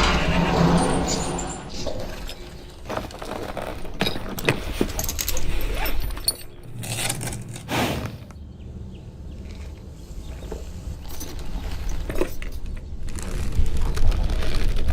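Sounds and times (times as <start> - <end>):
metal tack jingling: 3.6 - 7.2.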